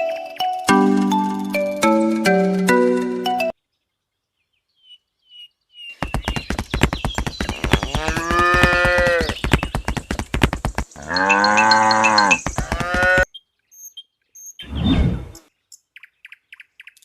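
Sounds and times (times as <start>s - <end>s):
cattle mooing: 7.8s - 9.4s, 11.0s - 13.2s
cowbells clanking: 11.0s - 13.2s.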